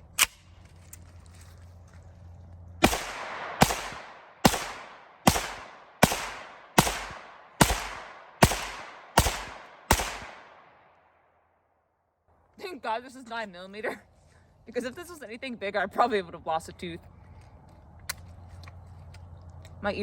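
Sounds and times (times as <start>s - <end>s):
gunshots with echo: 2.8s - 10.8s.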